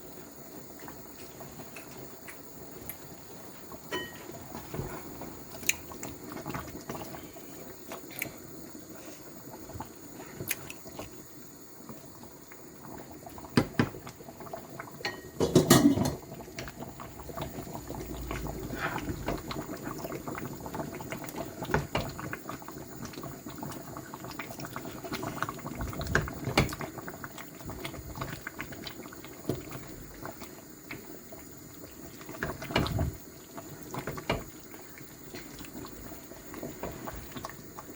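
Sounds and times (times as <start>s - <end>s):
soup bubbling in a pot: 0.0s - 37.9s.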